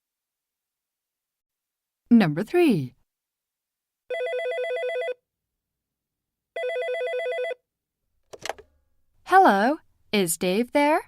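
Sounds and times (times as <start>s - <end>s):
electronic telephone ringing: 4.1s - 5.2s, 6.6s - 7.6s.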